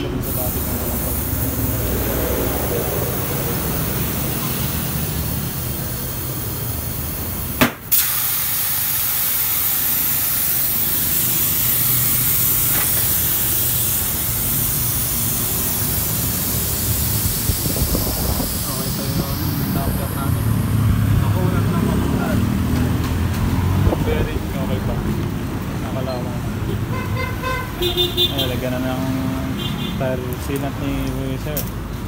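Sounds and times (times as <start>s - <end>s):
steady hissing: 0.2s - 20.6s
sharp click: 7.6s - 8.2s.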